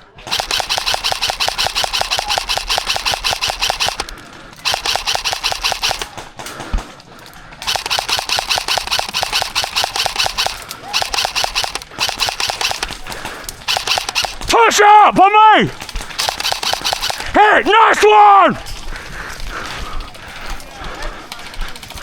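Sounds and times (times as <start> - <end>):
airsoft gun firing full-auto: 0.2 - 6.2, 7.6 - 14.6, 16.0 - 17.5.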